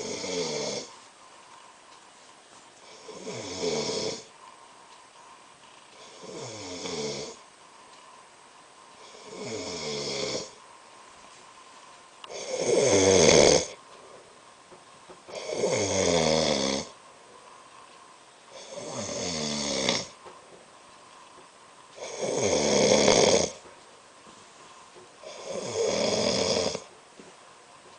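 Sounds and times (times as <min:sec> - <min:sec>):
man snoring: 0:00.0 - 0:00.9, 0:02.8 - 0:04.3, 0:06.0 - 0:07.4, 0:09.0 - 0:10.6, 0:12.3 - 0:13.8, 0:15.3 - 0:17.0, 0:18.5 - 0:20.2, 0:22.0 - 0:23.6, 0:25.2 - 0:26.9.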